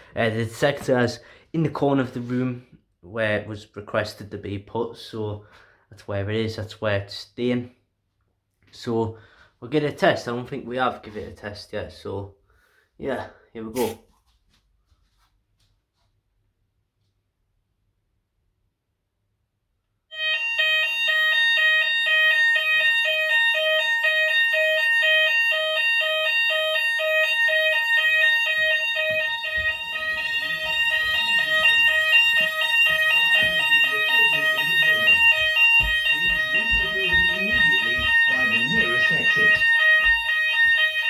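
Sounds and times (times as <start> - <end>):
fast-pulsing fire alarm tone: 20.1 - 41.0.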